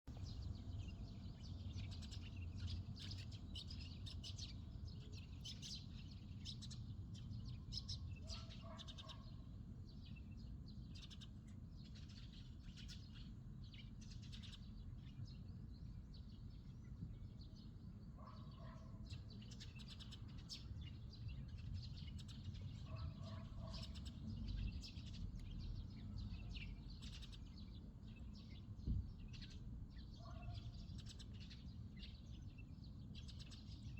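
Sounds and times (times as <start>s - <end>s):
small birds chirping: 0.1s - 33.9s
brief thump: 28.8s - 29.1s.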